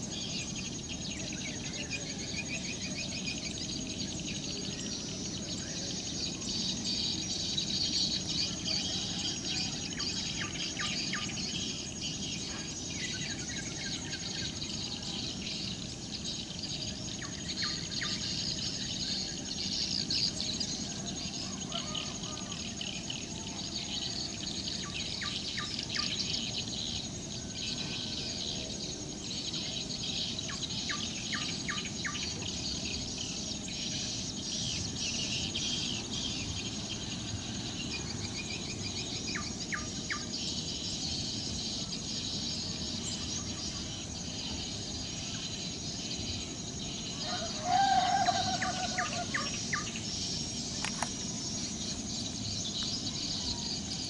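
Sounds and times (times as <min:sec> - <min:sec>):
insect drone: 0:00.0 - 0:54.0
birds chirping: 0:28.8 - 0:54.0.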